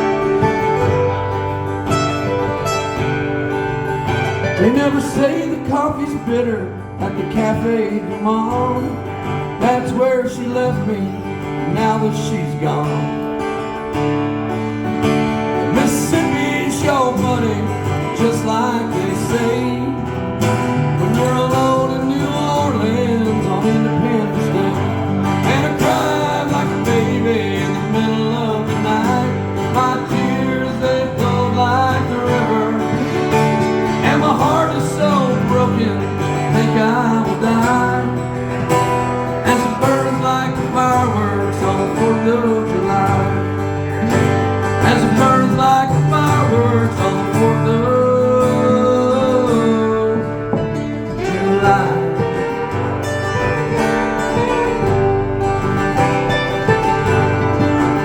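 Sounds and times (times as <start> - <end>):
wavering lead melody: 0.0 - 5.6, 50.3 - 58.0
acoustic guitar playing: 0.0 - 58.0.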